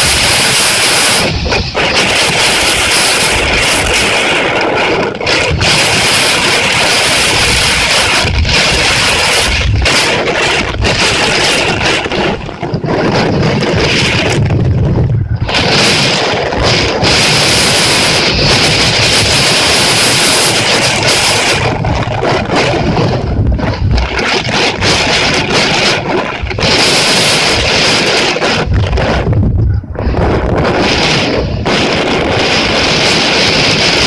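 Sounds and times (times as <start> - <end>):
rain and wind rushing: 0.0 - 34.0
wind buffeting microphone: 0.0 - 34.0.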